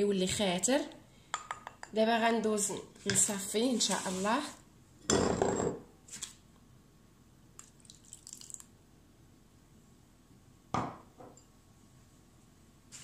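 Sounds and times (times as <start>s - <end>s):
liquid dripping and splashing: 7.6s - 8.7s.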